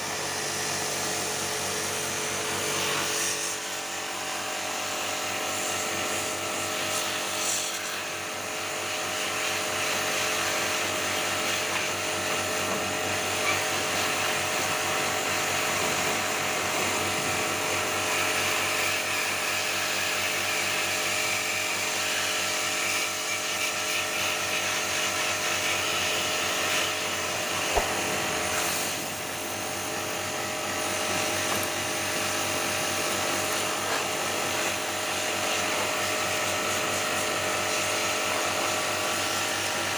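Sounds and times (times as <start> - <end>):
sharp click: 27.6 - 28.3.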